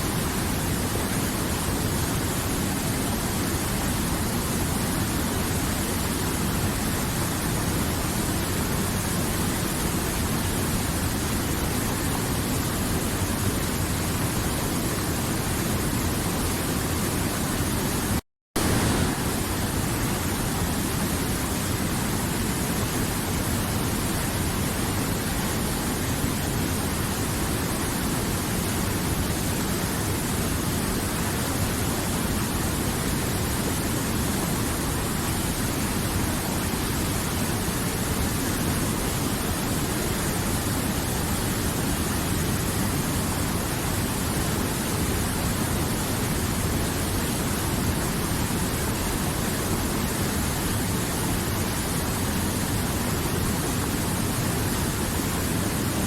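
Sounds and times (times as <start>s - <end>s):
river water rushing: 0.0s - 56.0s.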